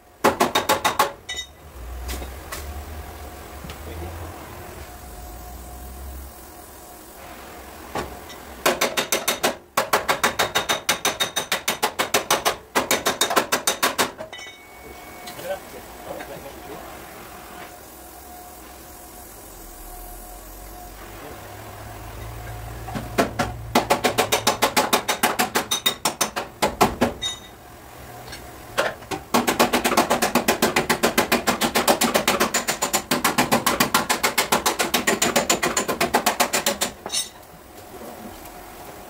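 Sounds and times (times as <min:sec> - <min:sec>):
hammer tapping sheet metal: 0:08.6 - 0:14.6, 0:23.1 - 0:27.4, 0:29.3 - 0:37.4.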